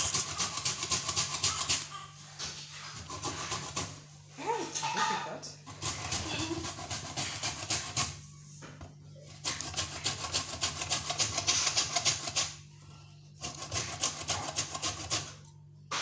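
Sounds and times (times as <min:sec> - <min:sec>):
peel rasping on a grater: 0:00.0 - 0:02.0, 0:02.8 - 0:04.0, 0:05.7 - 0:08.2, 0:09.4 - 0:12.5, 0:13.4 - 0:15.4.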